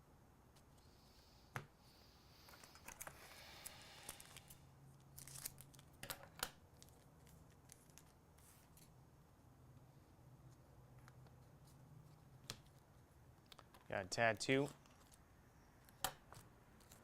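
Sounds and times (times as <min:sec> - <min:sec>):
card wrapper rustling and tearing: 0:02.6 - 0:06.0, 0:06.7 - 0:08.9.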